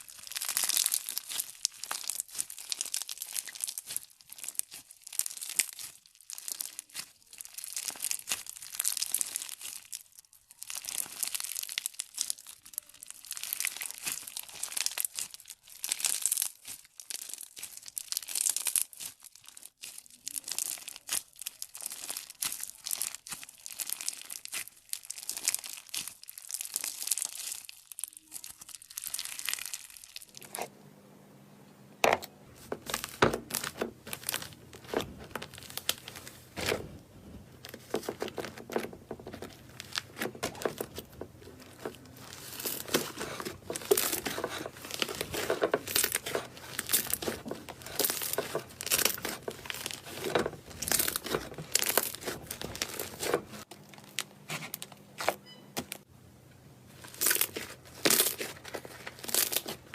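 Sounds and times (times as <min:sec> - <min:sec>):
crunchy slime crackling: 0:00.0 - 0:30.7, 0:32.5 - 0:55.3, 0:56.8 - 0:59.9
faint low hum: 0:30.3 - 0:38.0.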